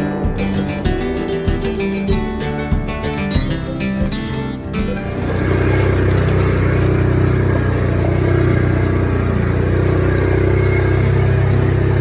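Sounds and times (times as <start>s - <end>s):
large engine humming: 4.3s - 12.0s.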